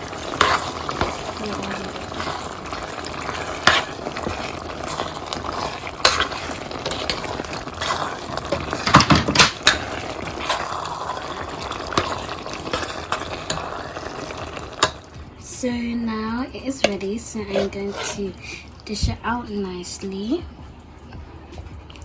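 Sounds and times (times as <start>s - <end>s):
utensil scraping pan: 0.0s - 15.0s, 16.8s - 18.6s
sauce simmering: 0.0s - 15.3s.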